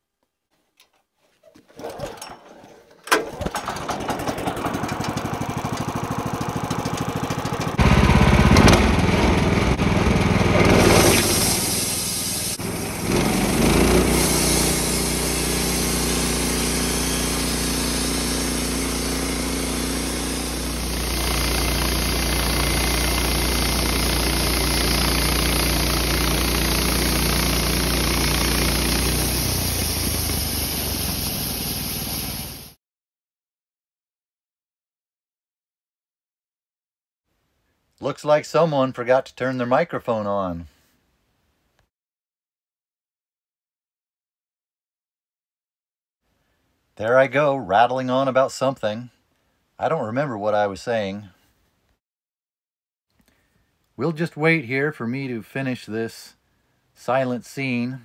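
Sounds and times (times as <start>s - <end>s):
sawmill engine cranking and running: 1.8s - 32.8s.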